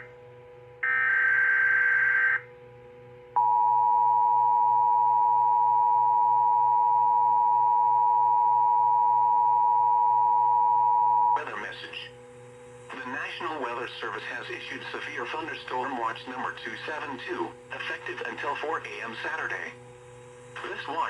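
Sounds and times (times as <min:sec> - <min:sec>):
two-tone attention signal: 0:03.4 - 0:11.4.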